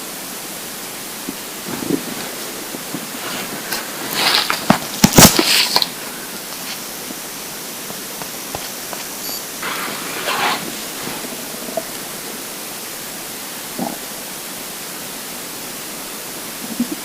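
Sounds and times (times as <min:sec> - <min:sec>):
steady hiss: 0:00.0 - 0:17.0
stomach rumbling: 0:01.2 - 0:12.7, 0:13.6 - 0:14.3, 0:16.5 - 0:17.0.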